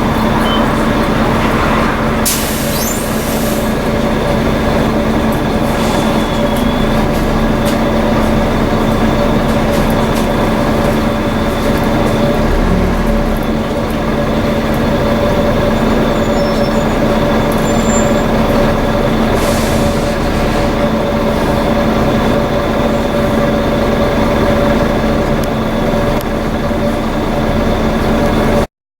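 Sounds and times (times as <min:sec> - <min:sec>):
bus engine noise: 0:00.0 - 0:28.7
bus whine: 0:00.0 - 0:28.7
air hiss: 0:02.2 - 0:03.8.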